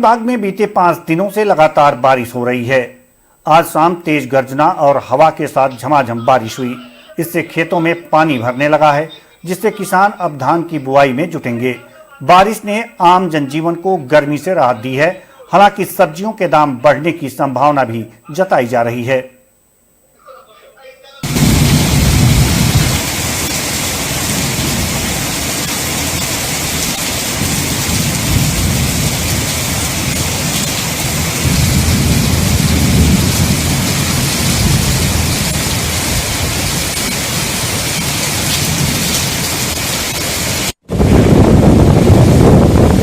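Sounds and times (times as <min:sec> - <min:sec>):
heavy rain pouring: 0:21.2 - 0:43.0
thunder rumbling: 0:21.2 - 0:43.0.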